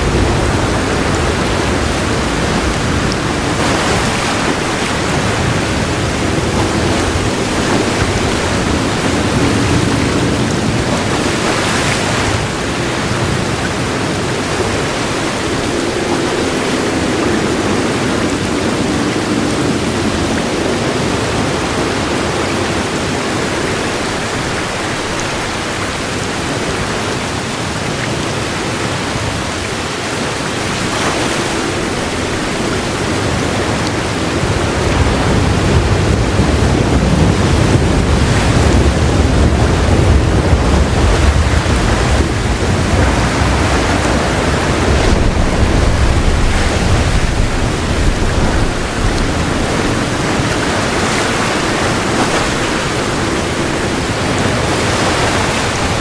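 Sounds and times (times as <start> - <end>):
heavy rain pouring: 0.0 - 56.0
low thunder roll: 33.3 - 51.0.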